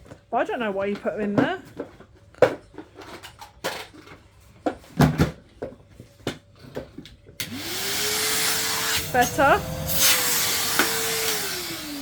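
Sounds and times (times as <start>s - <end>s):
vacuum cleaner motor whining: 7.4s - 12.0s.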